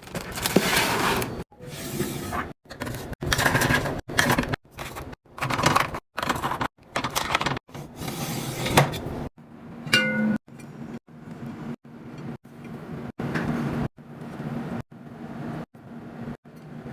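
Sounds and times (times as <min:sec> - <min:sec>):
packaged items rustling: 0:00.0 - 0:01.4.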